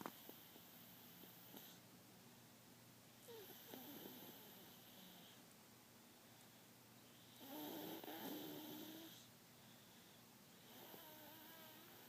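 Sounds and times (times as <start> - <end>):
faint snoring: 0.0 - 1.8, 3.2 - 5.4, 7.0 - 9.3, 10.5 - 12.0.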